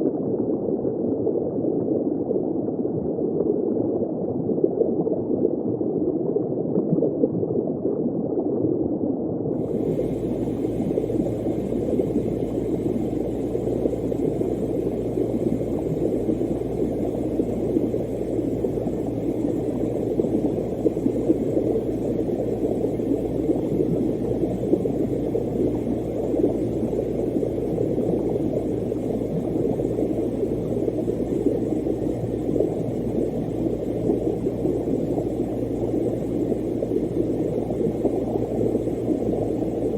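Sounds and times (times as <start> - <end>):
low hum: 9.6 - 39.9
underwater bubbling rush: 9.6 - 39.9.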